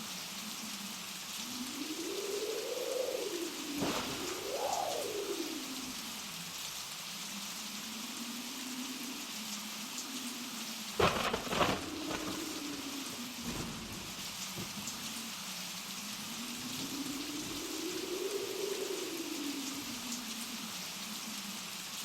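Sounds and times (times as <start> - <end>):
blizzard wind howling: 0.0 - 22.0.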